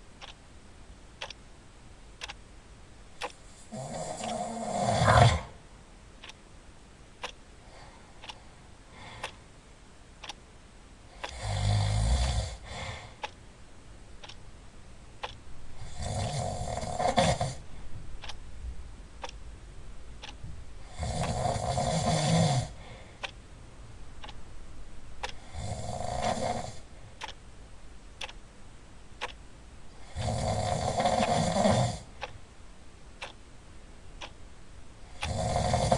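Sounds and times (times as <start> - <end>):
loud rasping snoring: 3.7 - 5.5, 15.8 - 17.6, 20.9 - 22.7, 25.4 - 26.8, 30.0 - 32.1, 35.2 - 35.9.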